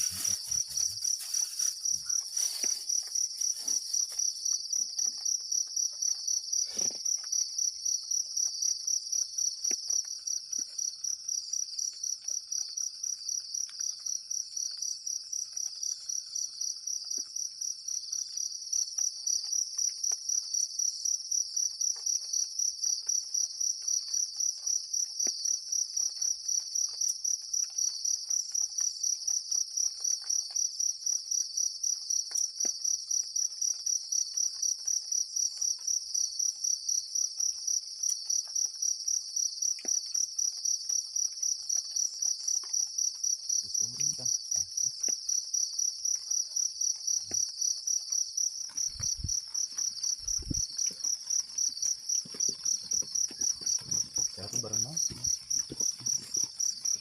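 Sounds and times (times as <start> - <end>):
crickets chirping: 0.0 - 57.0
dull low thumps: 48.8 - 49.5, 50.1 - 51.0.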